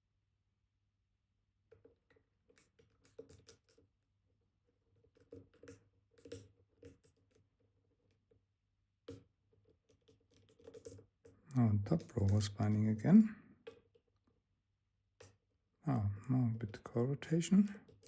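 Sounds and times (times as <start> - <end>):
lock pick clicking and scratching: 9.9 - 11.0.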